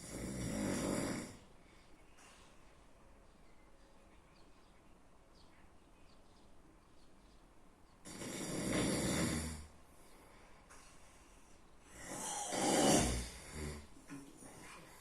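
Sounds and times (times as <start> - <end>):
person snoring: 0.0 - 1.4, 8.1 - 9.7, 11.9 - 15.0.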